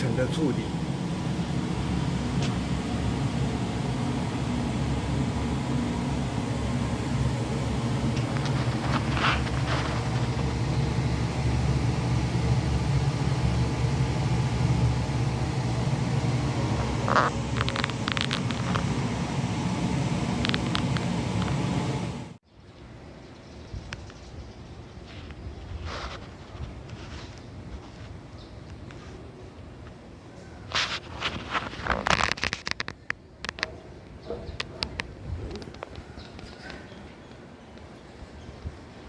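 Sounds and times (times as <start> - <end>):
machine humming: 0.0 - 22.4.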